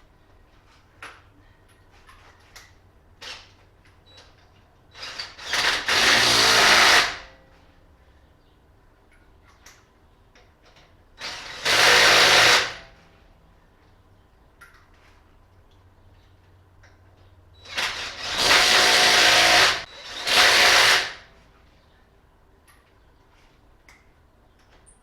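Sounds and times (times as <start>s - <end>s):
impact wrench on lug nuts: 5.0s - 7.3s, 10.8s - 12.9s, 17.7s - 21.3s.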